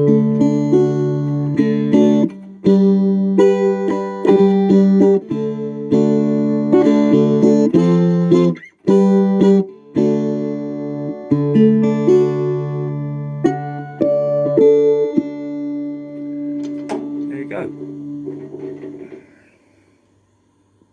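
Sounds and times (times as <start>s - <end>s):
cigar box guitar through amplifier: 0.0s - 20.9s.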